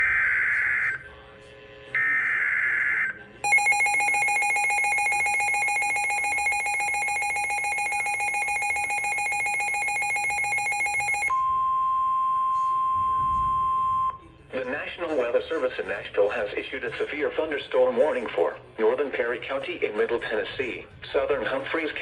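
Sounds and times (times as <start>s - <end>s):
two-tone attention signal: 2.0s - 14.2s.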